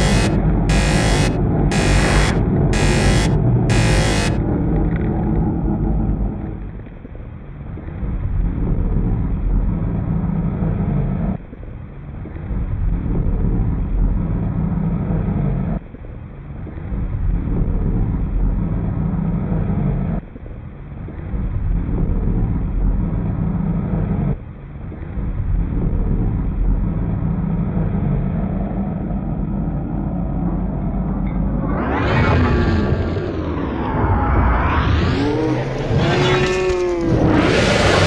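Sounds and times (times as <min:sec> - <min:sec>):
distorted guitar drone: 0:00.0 - 0:04.6, 0:31.3 - 0:38.0.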